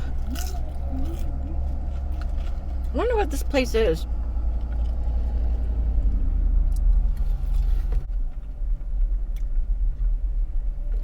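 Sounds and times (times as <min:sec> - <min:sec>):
car rumble from inside cabin: 0:00.0 - 0:11.0.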